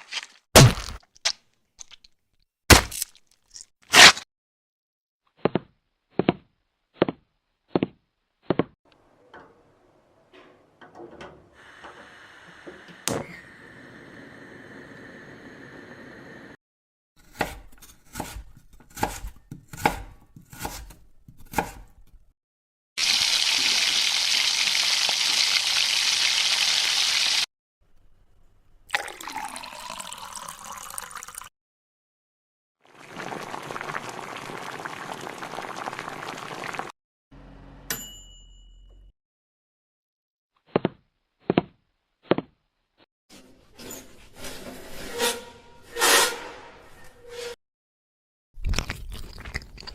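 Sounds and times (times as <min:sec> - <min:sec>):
knife chopping: 0:00.1 - 0:01.0, 0:02.7 - 0:03.1, 0:17.2 - 0:22.2
liquid pouring into vessel: 0:28.9 - 0:31.5.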